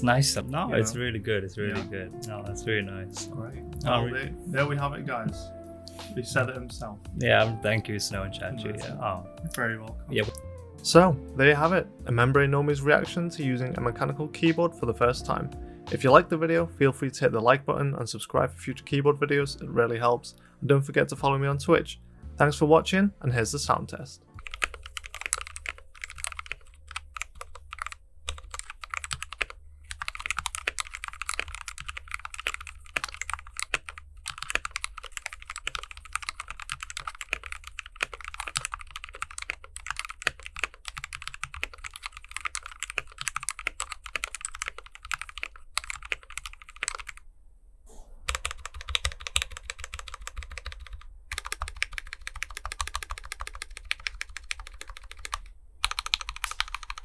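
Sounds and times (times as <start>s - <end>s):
mechanical keyboard typing: 24.4s - 47.2s, 48.3s - 57.0s.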